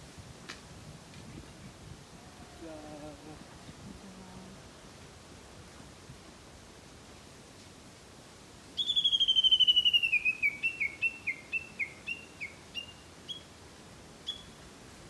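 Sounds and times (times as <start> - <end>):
bird call ringing notes: 8.8 - 13.4.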